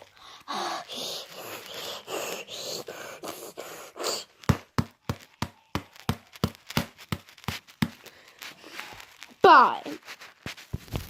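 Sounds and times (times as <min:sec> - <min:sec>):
hands slapping foam toy: 0:01.2 - 0:08.9.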